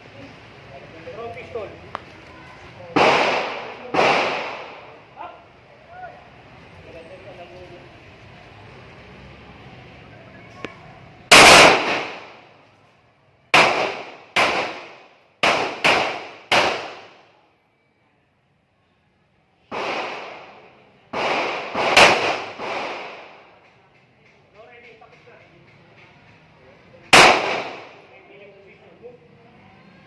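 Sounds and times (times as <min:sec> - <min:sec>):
pistol shots echoing: 0:03.0 - 0:05.0, 0:11.3 - 0:12.4, 0:13.6 - 0:17.2, 0:19.7 - 0:23.4, 0:27.1 - 0:28.0.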